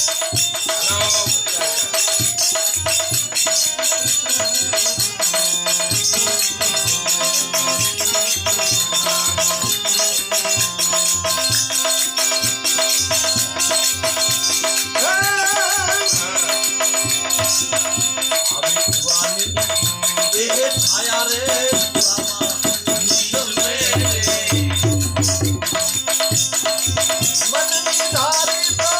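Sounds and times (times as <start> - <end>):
fast rattling percussion: 0.0 - 28.9
held melodic notes: 0.0 - 28.9
wavering high melodic phrase: 13.6 - 19.6.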